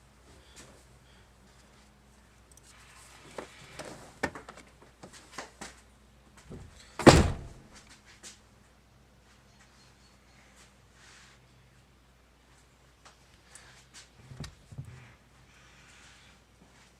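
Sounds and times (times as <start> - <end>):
heavy thunk: 7.0 - 7.6.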